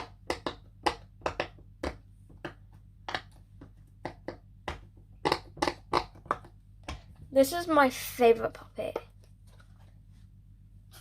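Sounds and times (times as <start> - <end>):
fidget toy bubbles popping: 0.0 - 7.1.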